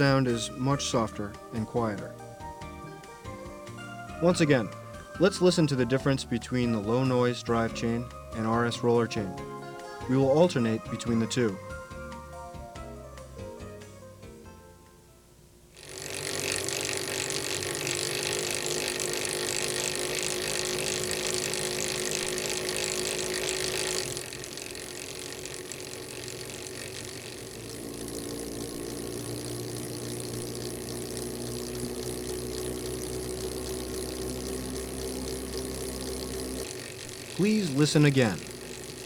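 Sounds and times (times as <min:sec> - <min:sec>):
roller chain rattling over sprockets: 0:15.8 - 0:39.0.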